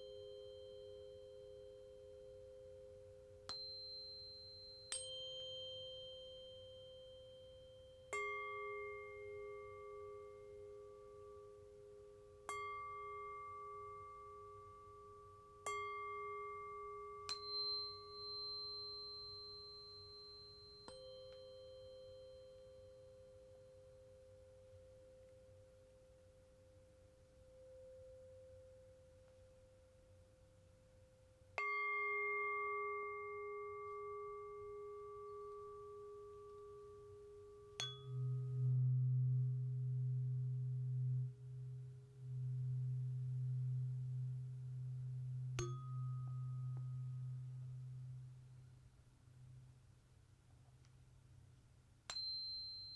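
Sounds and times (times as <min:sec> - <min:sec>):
tuning forks ringing: 0:03.5 - 0:10.7, 0:15.7 - 0:23.1, 0:37.8 - 0:48.4, 0:52.1 - 0:52.9
singing bowl ringing: 0:03.5 - 0:11.5, 0:12.5 - 0:23.2, 0:31.6 - 0:48.4, 0:52.1 - 0:52.9.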